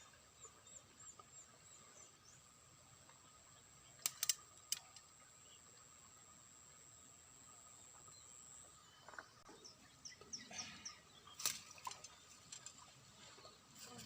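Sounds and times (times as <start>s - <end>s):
sharp click: 4.0s - 5.0s
bird chirping: 7.7s - 13.6s.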